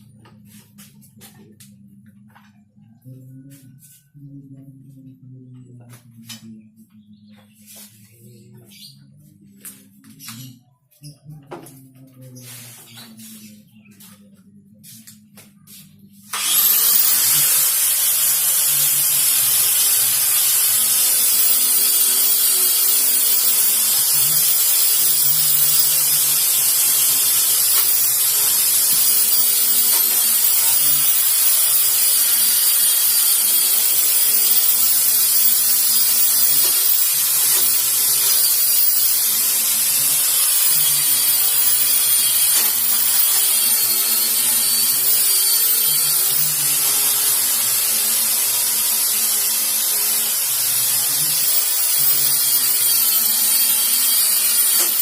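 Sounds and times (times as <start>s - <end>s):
electric sander motor whine: 16.3s - 55.0s
sandpaper rasping on wood: 16.4s - 48.0s.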